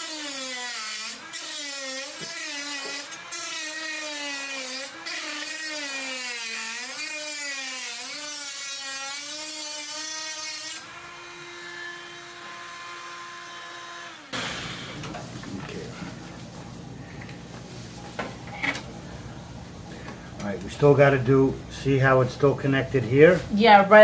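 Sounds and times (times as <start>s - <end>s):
rotary tool cutting: 0.0s - 14.7s.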